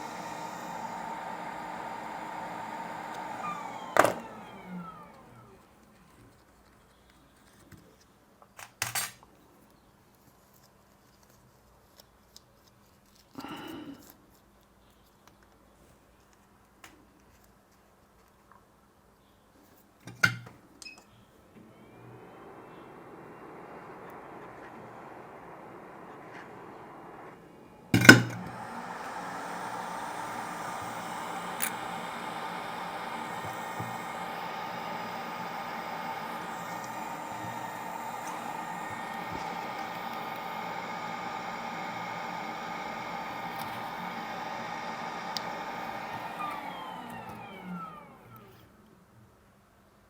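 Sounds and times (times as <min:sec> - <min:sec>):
blower whirring: 0:00.0 - 0:06.4, 0:21.4 - 0:48.8.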